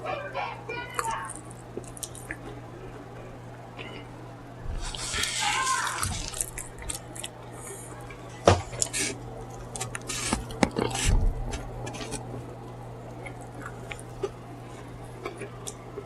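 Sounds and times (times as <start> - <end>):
wet chewing and lip smacking: 1.0 - 2.6, 4.8 - 7.4, 13.1 - 16.0.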